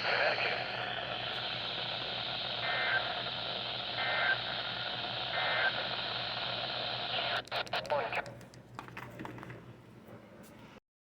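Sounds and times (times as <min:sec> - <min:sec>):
steady radio hiss: 0:00.0 - 0:08.4.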